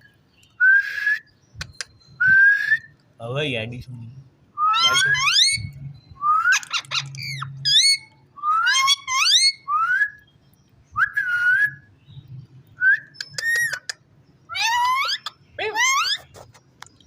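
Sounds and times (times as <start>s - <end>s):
parakeet whistling: 4.6s - 10.3s, 14.5s - 16.3s.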